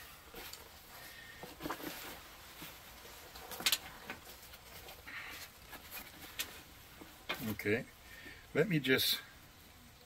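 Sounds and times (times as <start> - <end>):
rucksack fabric and straps rustling: 0.0 - 7.8.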